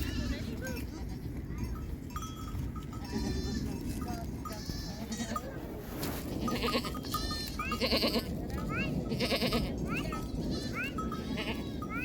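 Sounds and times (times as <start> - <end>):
goats and sheep bleating: 0.0 - 1.6, 2.9 - 5.6, 6.2 - 12.0
steady low rumble: 0.0 - 12.0.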